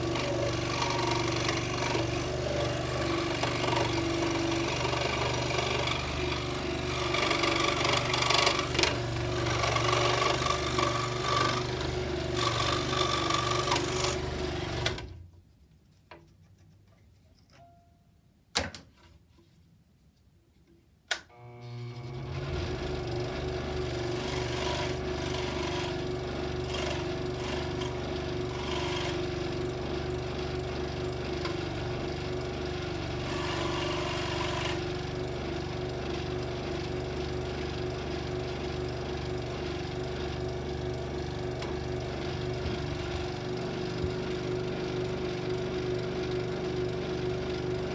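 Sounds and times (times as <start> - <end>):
scroll saw cutting wood: 0.0 - 15.2, 21.4 - 35.5, 36.6 - 45.0.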